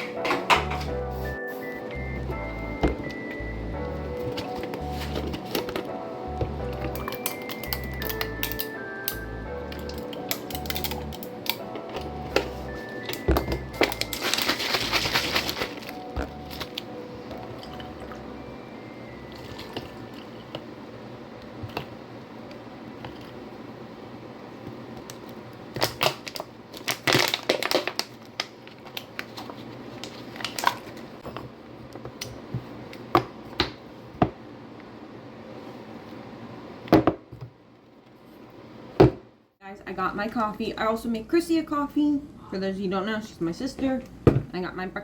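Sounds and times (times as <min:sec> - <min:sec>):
light background music: 0:00.0 - 0:20.5.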